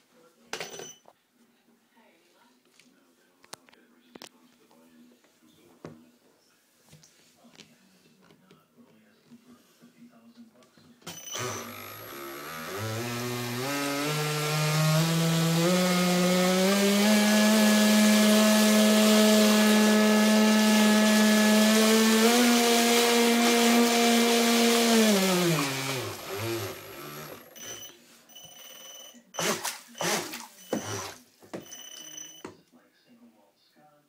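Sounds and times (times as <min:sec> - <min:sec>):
electric motor whining: 0:11.4 - 0:27.7.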